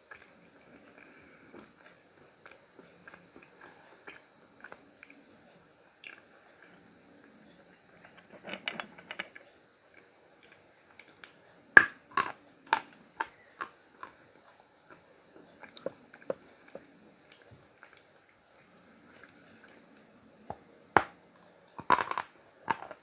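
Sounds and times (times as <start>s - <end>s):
chalk being chewed with crunches: 21.8s - 23.0s
loud crack of chalk: 21.8s - 23.0s.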